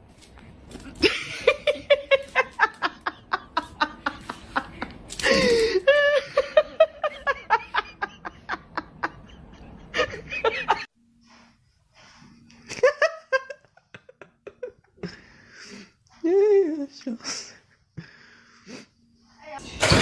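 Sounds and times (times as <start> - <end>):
person laughing hard: 1.0 - 10.9.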